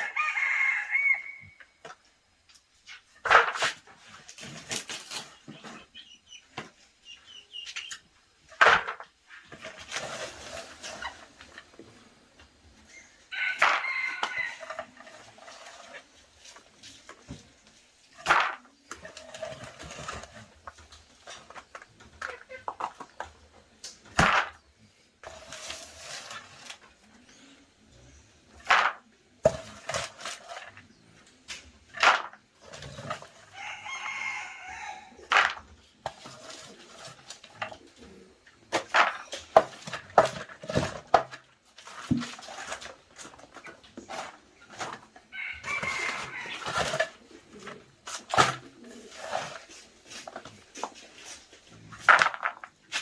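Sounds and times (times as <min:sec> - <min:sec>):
rooster crowing: 0:00.0 - 0:01.7, 0:13.3 - 0:14.8, 0:33.5 - 0:35.1, 0:45.3 - 0:46.9
chickens clucking: 0:00.0 - 0:53.0.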